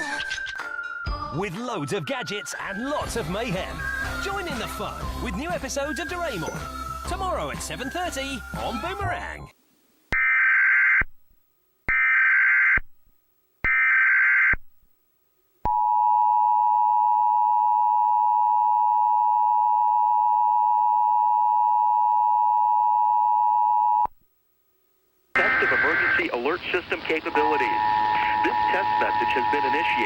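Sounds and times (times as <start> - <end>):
digital header data tones: 25.4 - 30.0
two-tone attention signal: 27.2 - 30.0.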